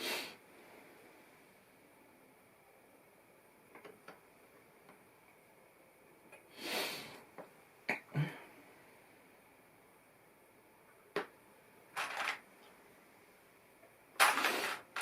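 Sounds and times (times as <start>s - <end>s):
person sniffing: 6.6s - 7.2s
plastic bricks clicking: 12.0s - 12.4s, 14.2s - 15.0s.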